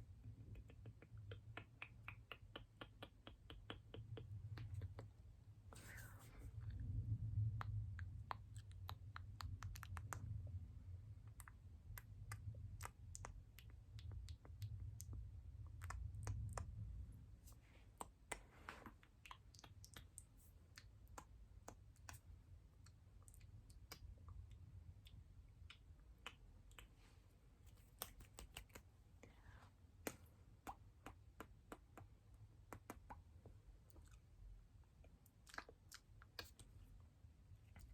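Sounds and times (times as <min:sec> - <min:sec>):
low rumble: 0:04.3 - 0:17.5.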